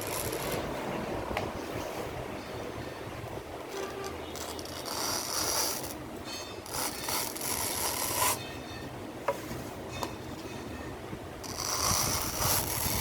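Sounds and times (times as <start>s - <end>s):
tool scraping tire rubber: 0.0s - 0.7s, 4.3s - 6.0s, 6.6s - 8.5s, 11.4s - 13.0s.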